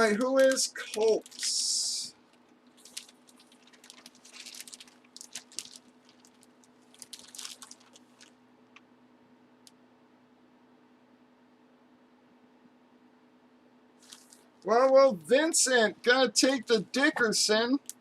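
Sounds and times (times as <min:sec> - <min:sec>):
crinkling and clicking of handling: 0:00.0 - 0:08.9, 0:14.0 - 0:14.5
low steady hum: 0:00.0 - 0:18.0.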